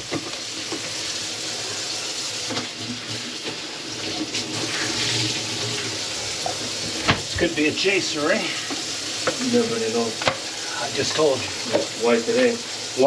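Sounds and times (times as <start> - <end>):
tap water running into sink: 0.0 - 13.0.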